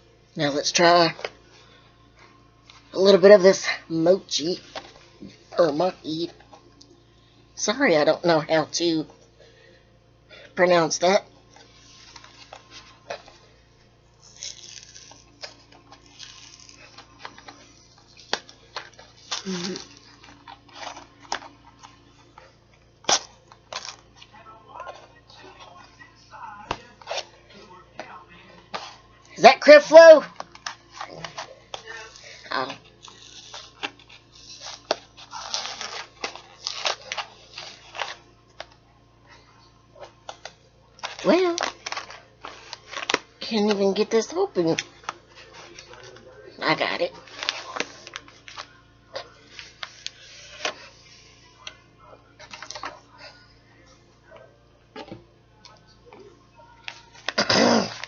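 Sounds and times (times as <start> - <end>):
plastic packaging crinkling: 11.6 - 22.4, 30.3 - 38.8, 40.2 - 46.3.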